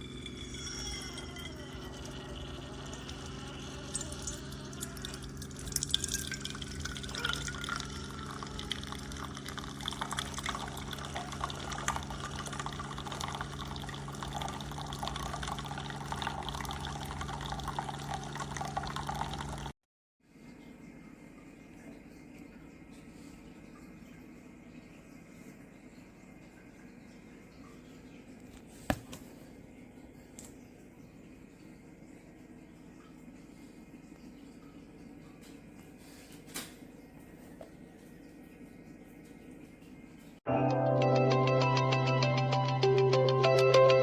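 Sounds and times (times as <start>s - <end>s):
liquid dripping into cup: 0.0s - 19.7s
coffee maker pump hum: 0.0s - 40.4s.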